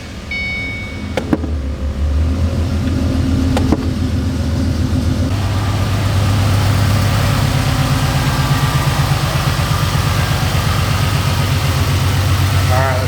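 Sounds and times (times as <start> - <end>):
car engine idling: 0.0 - 13.0.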